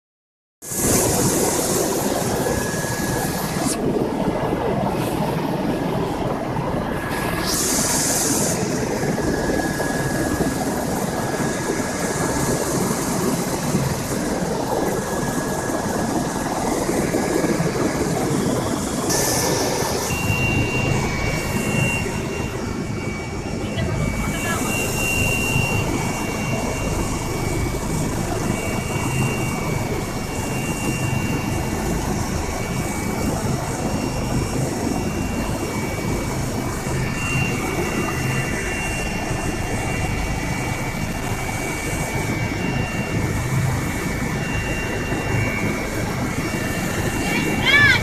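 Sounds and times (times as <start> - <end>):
helicopter engine and rotor noise: 0.6 - 48.0
faint high whine: 0.7 - 48.0.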